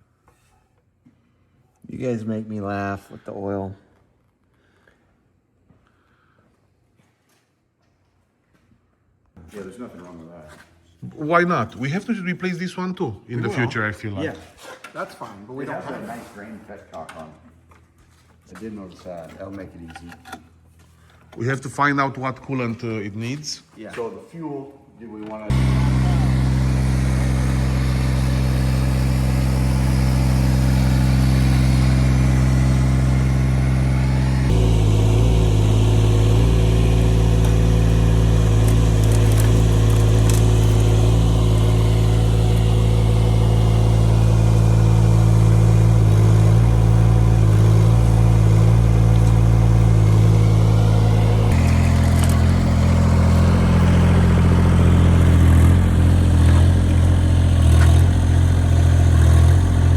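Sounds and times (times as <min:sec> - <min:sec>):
excavator diesel engine running: 0:25.5 - 0:59.9.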